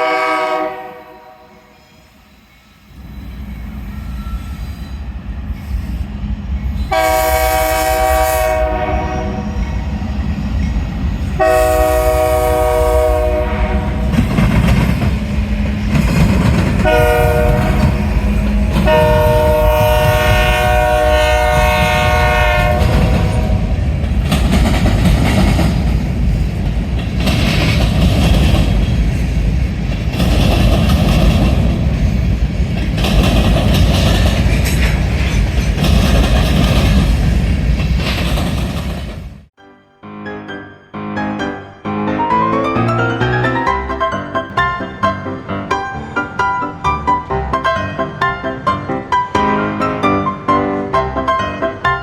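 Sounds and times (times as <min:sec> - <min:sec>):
locomotive air horn: 0:00.0 - 0:02.0, 0:06.9 - 0:09.7, 0:11.4 - 0:14.2, 0:16.8 - 0:23.7
rumble of train engine: 0:00.0 - 0:39.6
wheels clattering over rail joints: 0:13.8 - 0:20.6, 0:22.6 - 0:39.3.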